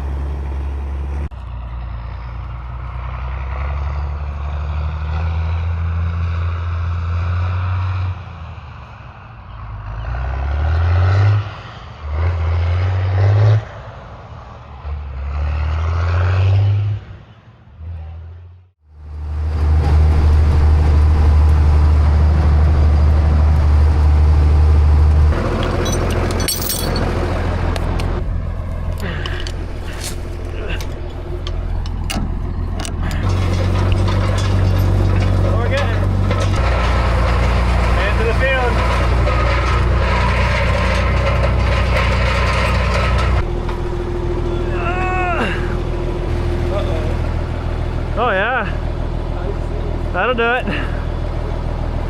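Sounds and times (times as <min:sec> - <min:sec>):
tractor engine revving: 0:00.0 - 0:08.2, 0:19.0 - 0:52.0.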